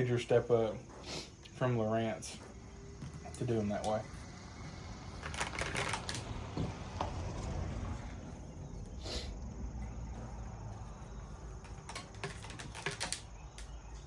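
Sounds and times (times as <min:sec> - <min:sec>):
insects chirping: 0:00.0 - 0:14.0
power cord clicks and rustles: 0:03.1 - 0:04.2, 0:05.0 - 0:07.2, 0:11.1 - 0:14.0.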